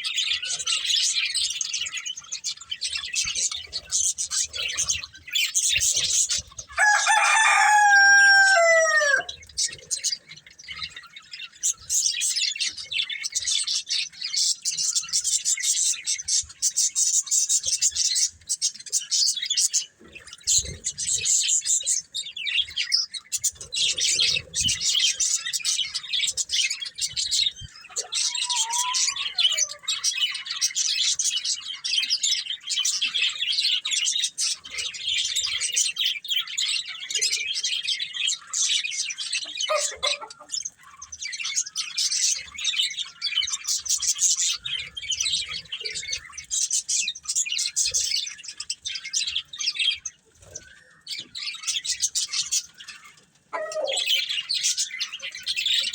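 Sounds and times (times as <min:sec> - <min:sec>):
budgerigars chirping and warbling: 0:00.0 - 0:55.9.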